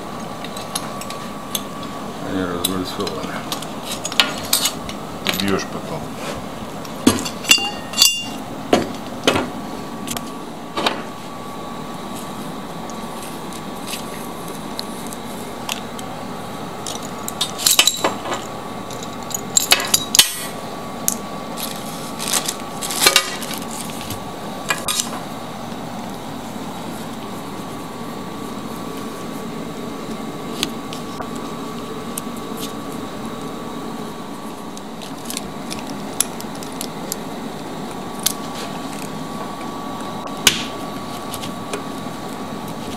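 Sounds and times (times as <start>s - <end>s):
hand tools clinking on metal: 7.2s - 8.4s.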